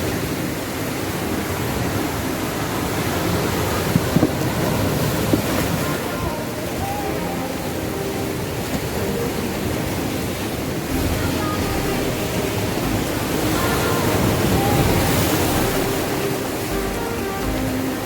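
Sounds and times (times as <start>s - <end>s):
sea surf breaking on shore: 0.0s - 18.0s.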